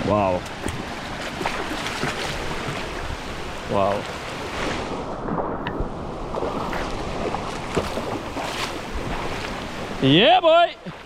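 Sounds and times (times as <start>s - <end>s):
river water flowing over rocks: 0.3s - 5.1s.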